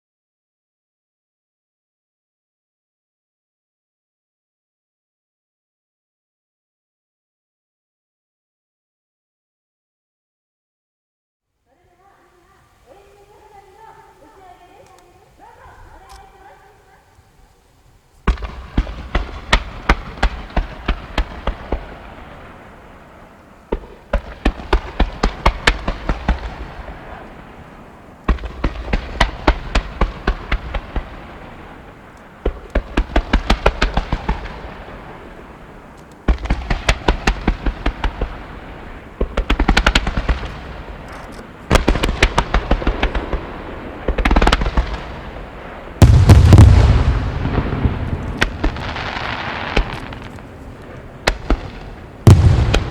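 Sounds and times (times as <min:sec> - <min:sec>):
firework bangs: 0:18.1 - 0:52.9
deep firework boom: 0:18.2 - 0:52.9.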